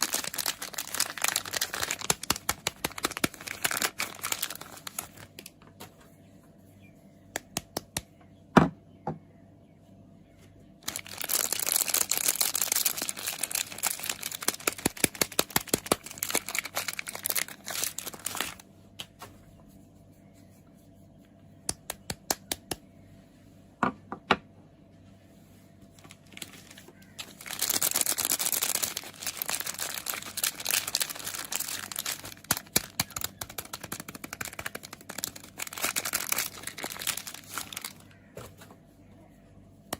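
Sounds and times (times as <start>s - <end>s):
packaging crinkling and tearing: 0.0s - 5.7s, 10.8s - 18.7s, 26.0s - 38.3s.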